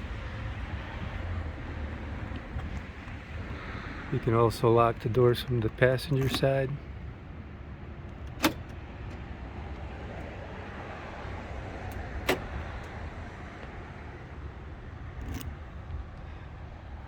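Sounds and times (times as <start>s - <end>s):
car door locks clicking: 8.1s - 9.9s, 11.9s - 13.0s, 15.2s - 15.6s.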